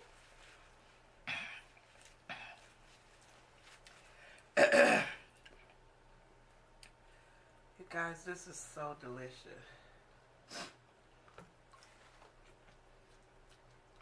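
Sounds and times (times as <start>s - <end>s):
soft eating noises: 0.0s - 4.6s, 5.2s - 7.7s, 10.0s - 14.0s
woman coughing: 4.6s - 5.3s.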